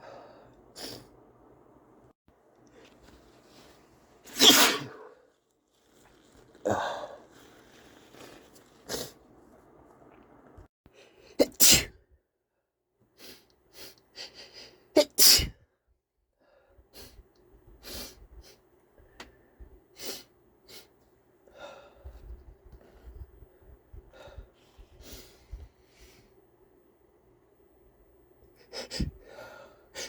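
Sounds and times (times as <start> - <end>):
breaths and sniffs: 2.7 - 9.4
man sneezing: 4.3 - 5.2, 11.4 - 11.9.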